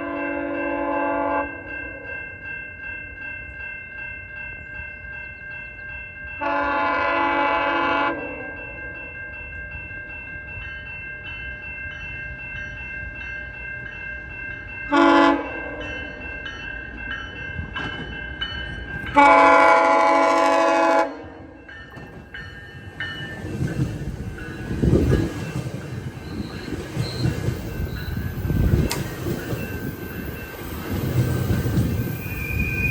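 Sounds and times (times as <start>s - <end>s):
train horn blasts: 0.0s - 1.7s, 6.4s - 8.5s, 14.9s - 15.9s, 19.2s - 21.6s
train rolling past rumble: 13.4s - 32.9s.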